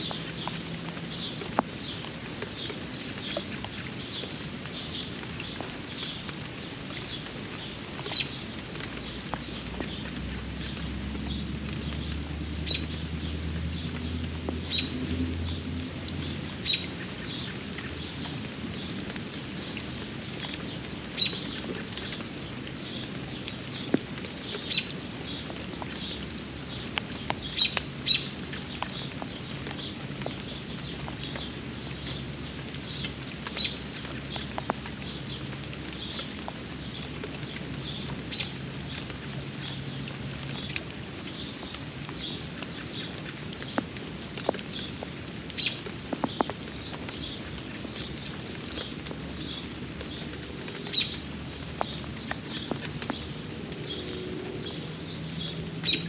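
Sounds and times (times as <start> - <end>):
steady rain: 0.0 - 56.0
bird chirping: 55.0 - 56.0.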